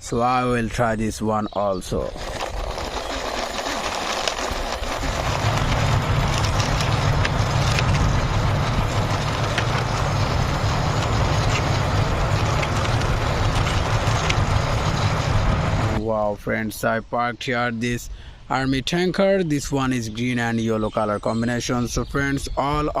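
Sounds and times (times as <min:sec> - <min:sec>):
plastic toy tank rolling: 0:01.8 - 0:16.0
small clicks: 0:02.1 - 0:15.2.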